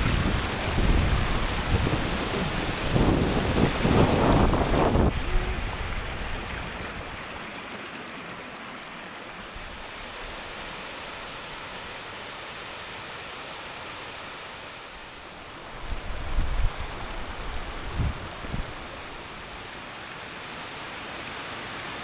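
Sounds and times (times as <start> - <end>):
wind buffeting microphone: 0.0 - 7.4, 15.6 - 19.6
waterfall rushing: 0.0 - 22.0.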